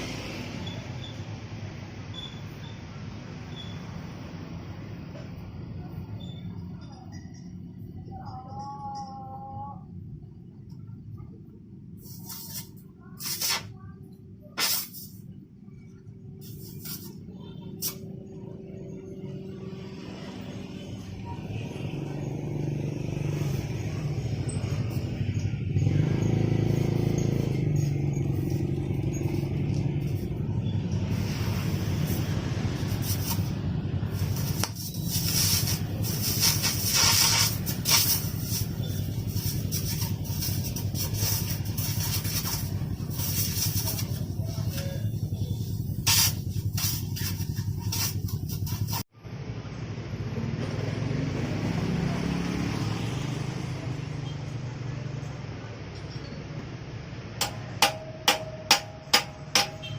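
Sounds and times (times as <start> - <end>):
small motorcycle engine running: 19.6 - 49.0
sharp exhaust pops: 31.2 - 49.0, 57.4 - 59.9.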